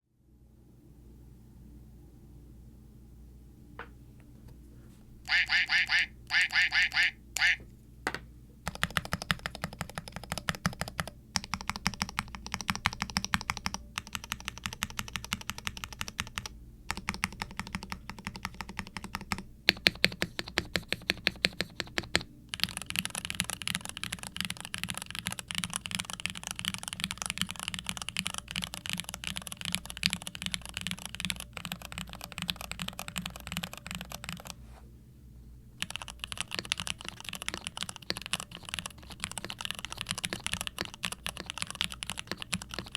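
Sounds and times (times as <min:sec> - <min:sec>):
mechanical keyboard typing: 0:08.6 - 0:34.6, 0:35.8 - 0:42.9.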